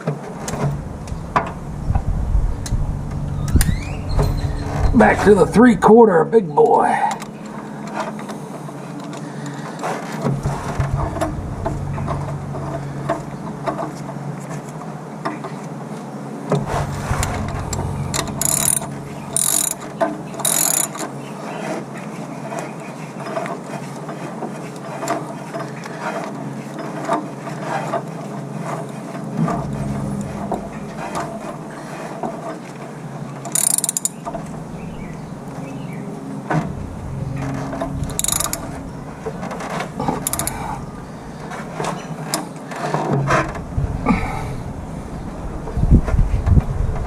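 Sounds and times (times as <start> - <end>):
socket ratchet clicking: 18.2 - 19.8, 20.4 - 21.1, 33.5 - 34.2, 38.1 - 38.7, 40.3 - 40.7
metal tool clinks: 20.5 - 21.1, 33.6 - 34.2, 38.1 - 38.6, 40.3 - 40.6.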